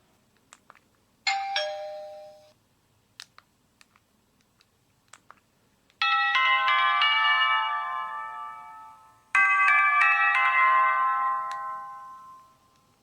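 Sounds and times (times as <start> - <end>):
polyphonic phone ringtone: 1.3 - 2.5, 6.0 - 12.6.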